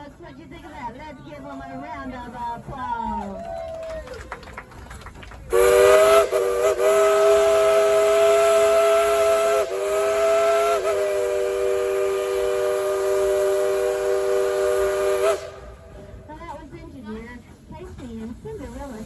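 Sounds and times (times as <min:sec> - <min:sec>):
steam whistle blast: 0:05.5 - 0:16.0
steam hissing: 0:05.5 - 0:16.2, 0:18.3 - 0:19.0.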